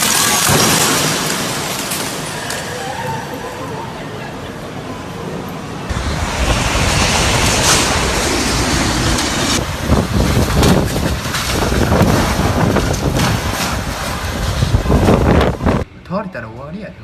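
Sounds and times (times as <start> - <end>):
strong wind buffeting microphone: 5.9 - 15.9.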